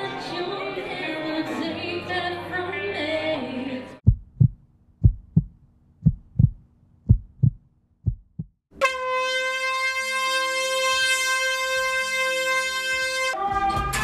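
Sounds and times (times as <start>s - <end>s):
low heartbeat-like thump: 4.0s - 8.6s.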